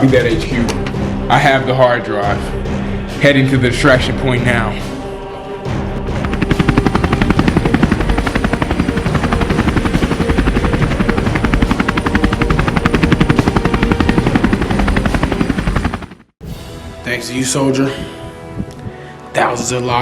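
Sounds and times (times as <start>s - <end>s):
helicopter rotors beating: 5.4s - 16.4s.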